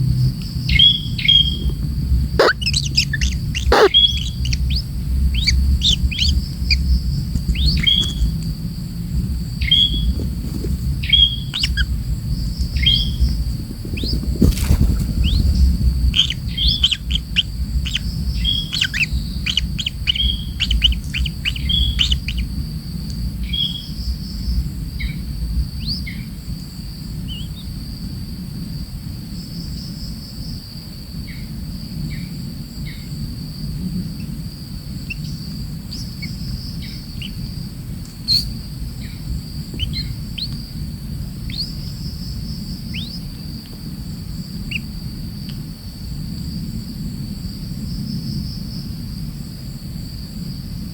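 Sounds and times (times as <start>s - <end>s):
birds chirping: 0.0s - 22.7s, 38.2s - 43.5s
low rumble: 0.0s - 26.4s
high insect drone: 0.0s - 50.9s.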